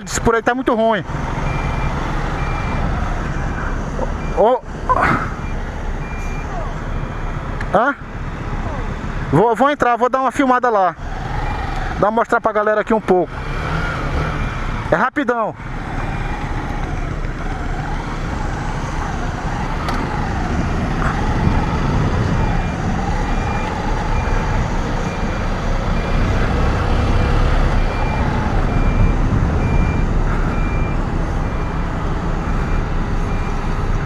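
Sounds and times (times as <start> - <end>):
road and wind rumble: 0.0 - 34.0
reversing alarm beeps: 1.4 - 2.8, 4.2 - 4.5, 5.4 - 7.4, 22.4 - 26.3, 27.0 - 33.7.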